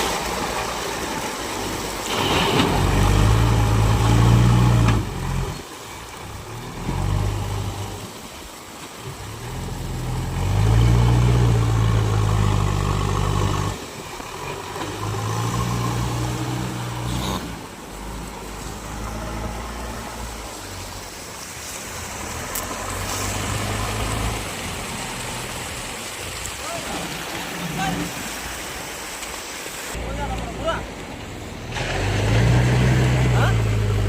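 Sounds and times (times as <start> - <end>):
loader diesel engine revving: 2.1 - 5.6, 9.2 - 20.6, 22.2 - 25.7, 31.5 - 34.0.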